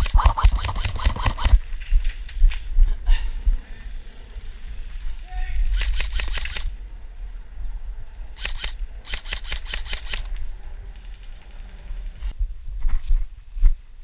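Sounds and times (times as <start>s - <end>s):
airsoft gun firing bursts: 0.0s - 1.6s, 5.7s - 6.8s, 8.4s - 10.3s.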